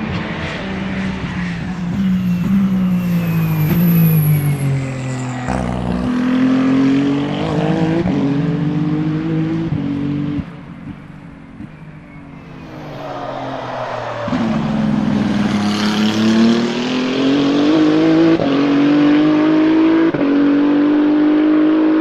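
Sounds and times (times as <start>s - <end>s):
race car engine revving: 12.2s - 22.0s.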